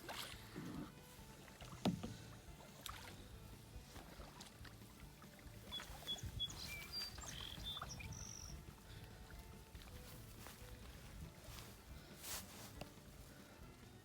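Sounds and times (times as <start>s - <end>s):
paddle strokes in water: 0.0s - 13.7s
high bird chirps: 5.7s - 8.6s.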